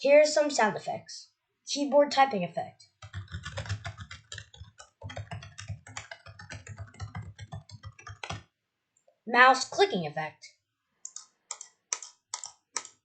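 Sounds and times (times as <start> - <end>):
typing on computer keyboard: 3.0 - 8.5, 11.1 - 13.0.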